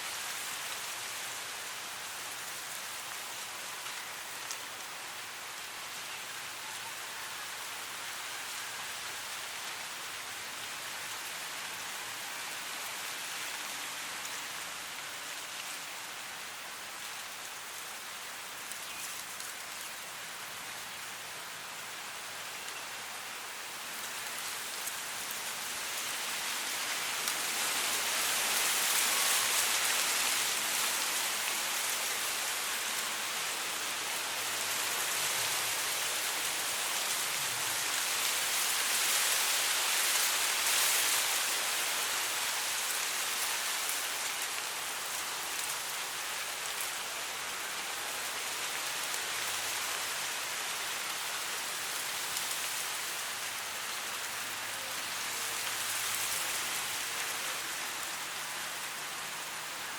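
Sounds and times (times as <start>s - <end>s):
wind rustling dry grass: 0.0s - 59.9s.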